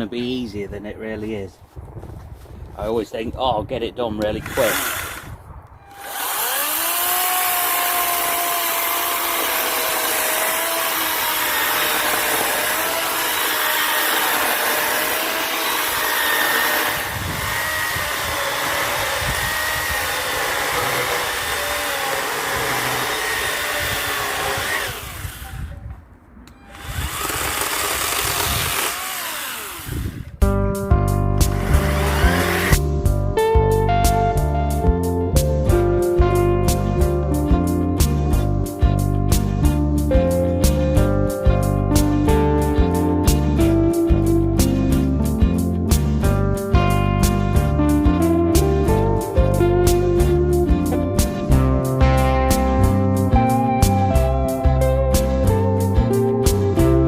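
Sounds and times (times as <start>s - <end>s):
chainsaw cutting logs: 4.4s - 25.8s, 26.6s - 30.4s, 31.4s - 32.9s
music: 30.4s - 57.0s.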